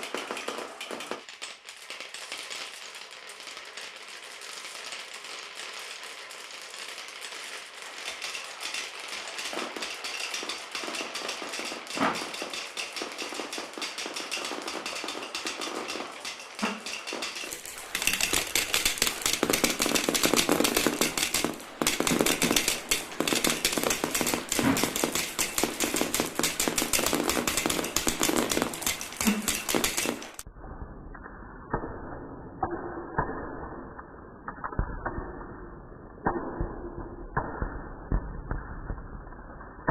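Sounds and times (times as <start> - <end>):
marbles clattering down plastic track: 0.0 - 30.5.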